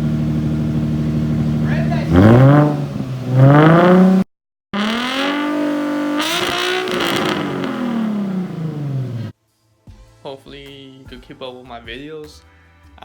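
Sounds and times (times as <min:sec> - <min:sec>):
car engine revving: 0:00.0 - 0:09.3.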